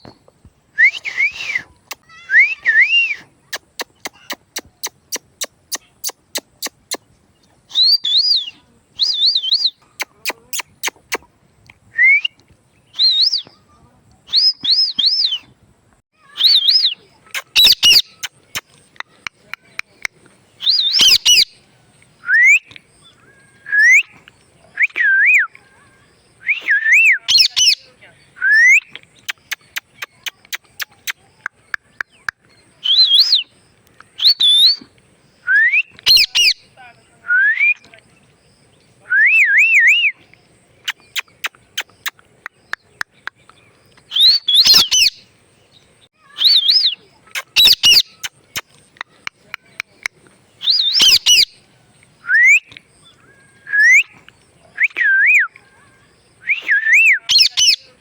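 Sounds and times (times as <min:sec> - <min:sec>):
parrot whistling and chirping: 0:07.7 - 0:09.8, 0:13.0 - 0:13.4, 0:16.4 - 0:18.6, 0:20.6 - 0:21.5, 0:32.8 - 0:33.5, 0:34.2 - 0:34.8, 0:35.5 - 0:36.6, 0:44.1 - 0:45.2, 0:46.4 - 0:48.3, 0:50.6 - 0:51.5.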